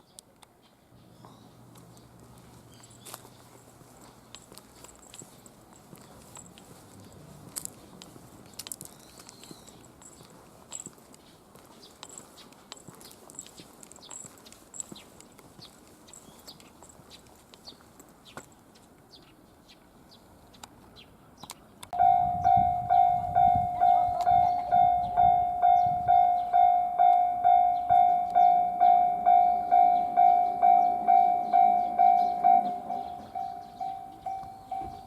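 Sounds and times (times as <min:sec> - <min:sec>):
small birds chirping: 0:00.0 - 0:35.0
level crossing warning bell: 0:22.0 - 0:35.0.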